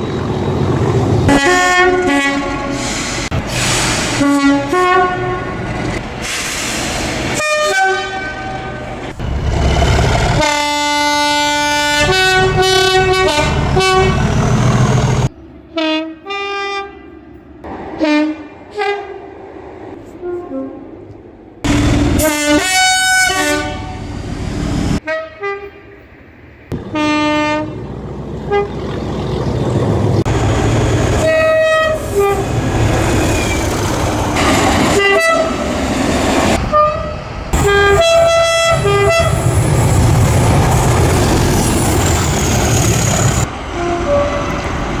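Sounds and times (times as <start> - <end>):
train passing rumble: 0.0 - 15.8, 25.7 - 45.0
locomotive two-tone horn blasts: 1.3 - 3.0, 4.1 - 5.6, 7.4 - 9.0, 10.4 - 14.2, 15.8 - 17.1, 21.7 - 24.1, 25.0 - 26.0, 26.9 - 27.8, 28.5 - 28.8, 31.2 - 32.7, 34.9 - 35.7, 36.7 - 39.6, 43.7 - 44.6.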